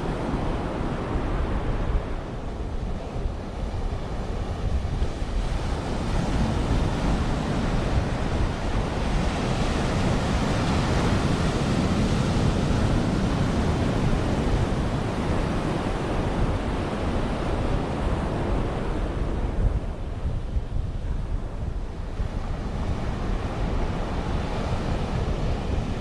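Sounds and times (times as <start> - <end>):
wind rumbling on microphone: 0.0 - 26.0
sea waves washing onto beach: 4.2 - 19.6.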